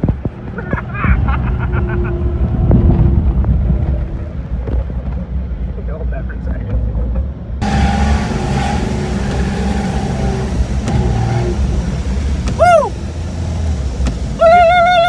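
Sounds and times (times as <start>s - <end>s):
car engine under load: 6.7s - 15.0s
rushing hiss: 7.6s - 15.0s
person whooping: 12.5s - 13.0s, 14.4s - 15.0s.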